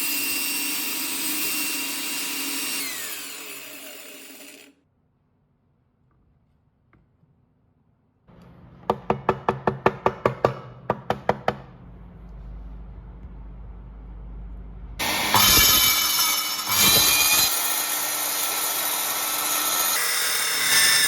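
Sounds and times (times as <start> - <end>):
power saw running: 0.0 - 4.7, 15.0 - 21.0.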